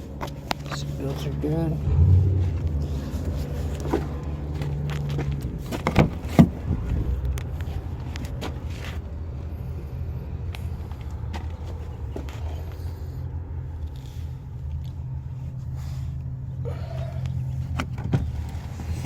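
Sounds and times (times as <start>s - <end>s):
steady low rumble: 0.0s - 19.0s
clicks and knocks of car parts: 3.2s - 9.0s, 17.2s - 19.0s.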